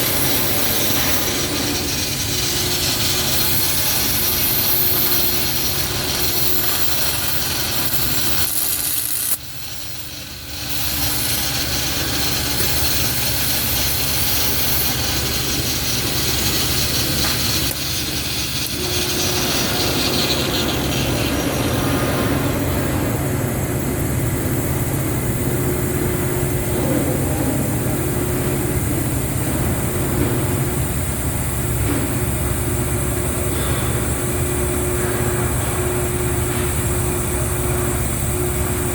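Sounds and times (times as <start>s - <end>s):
welding arc crackling hiss: 0.0s - 38.9s.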